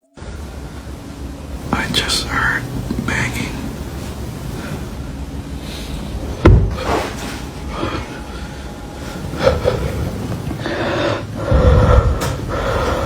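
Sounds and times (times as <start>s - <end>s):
rustling: 0.2s - 13.0s
soft knocks: 6.0s - 8.2s.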